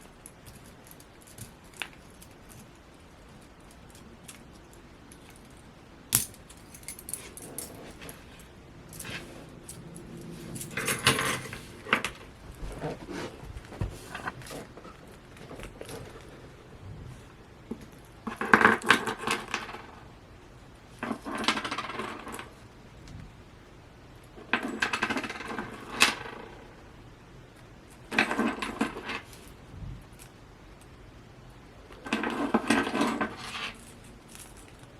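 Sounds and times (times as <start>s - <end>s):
keyring metallic clinks: 3.7s - 11.6s.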